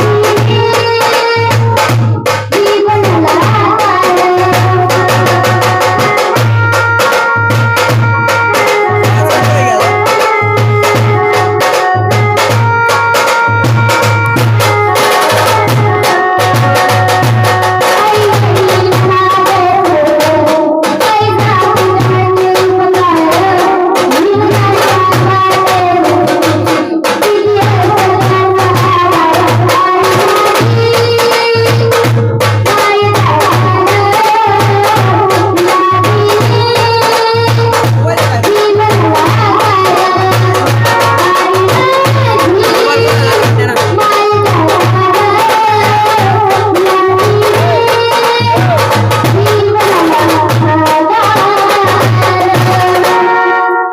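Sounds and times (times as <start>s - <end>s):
steady drum beat: 0.0s - 53.2s
sliding melody line: 4.1s - 19.4s, 36.0s - 50.6s.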